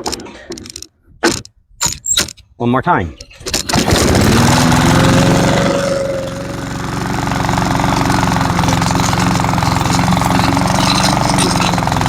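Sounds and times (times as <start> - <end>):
lawn mower engine running: 3.6 - 12.0.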